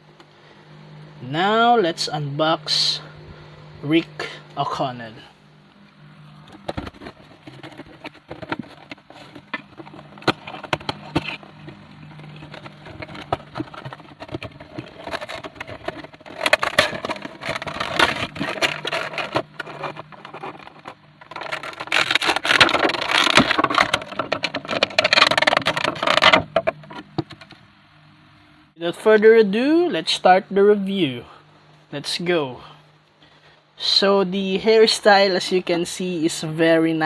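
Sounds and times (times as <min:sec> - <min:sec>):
cardboard and plastic crinkling: 0:06.3 - 0:27.4.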